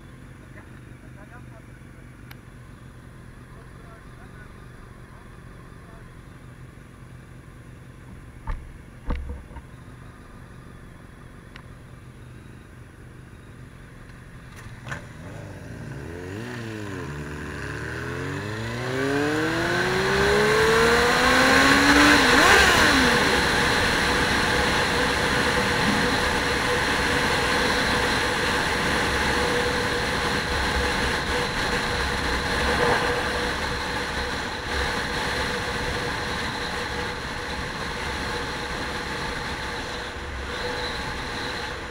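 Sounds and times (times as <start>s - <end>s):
vehicle engine revving and accelerating: 14.8s - 41.9s.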